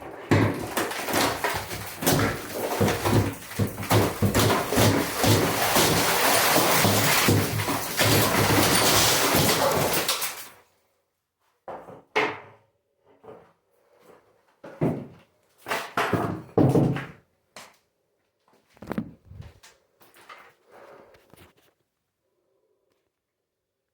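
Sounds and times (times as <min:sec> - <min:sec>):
concrete chunks falling: 0:00.0 - 0:10.6
pickaxe breaking concrete: 0:00.3 - 0:10.6.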